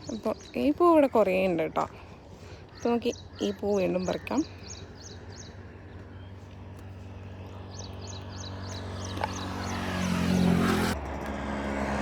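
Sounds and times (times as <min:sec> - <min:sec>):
motor vehicle approaching: 0:04.4 - 0:12.0
bird chirping: 0:07.4 - 0:10.9.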